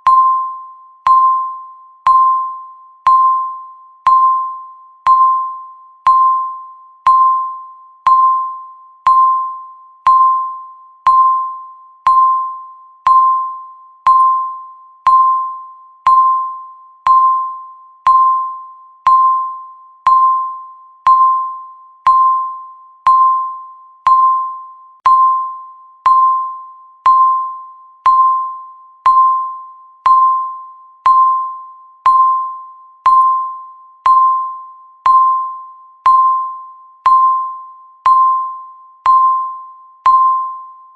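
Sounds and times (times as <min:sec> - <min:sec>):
timer ticking chime tones: 0:00.0 - 0:40.8.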